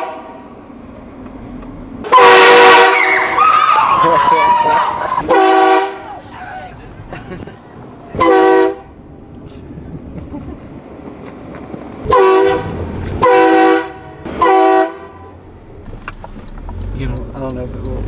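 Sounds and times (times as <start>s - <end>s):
train air horn blasts: 0.0s - 0.5s, 2.0s - 3.4s, 5.2s - 6.2s, 8.2s - 9.0s, 12.1s - 15.4s
car road noise: 0.0s - 18.0s.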